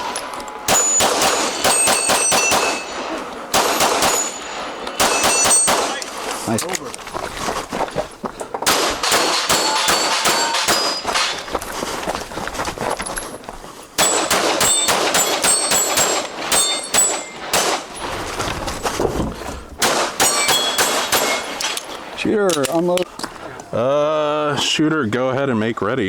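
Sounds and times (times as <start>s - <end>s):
steel plate targets ringing: 0.0s - 6.1s, 9.0s - 11.5s, 14.0s - 18.1s, 19.8s - 21.9s
rapid pistol shots: 0.7s - 2.9s, 3.5s - 4.4s, 5.0s - 6.1s, 8.6s - 11.3s, 14.0s - 17.9s, 19.8s - 21.8s.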